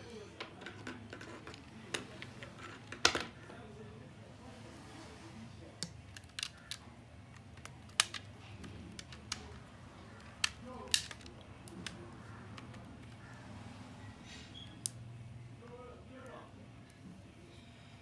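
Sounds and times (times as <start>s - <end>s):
tools clicking and snapping: 5.8s - 12.8s.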